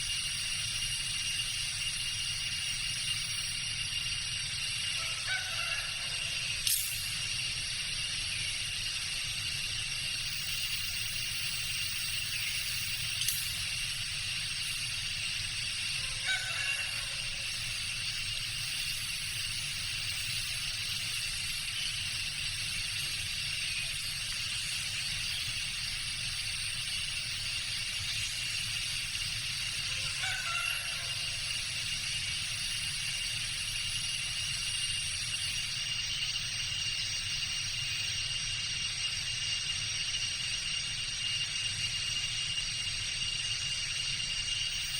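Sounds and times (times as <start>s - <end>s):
insects droning: 0.0s - 44.9s
fowl crowing: 5.0s - 6.4s, 16.0s - 17.4s, 29.9s - 31.4s.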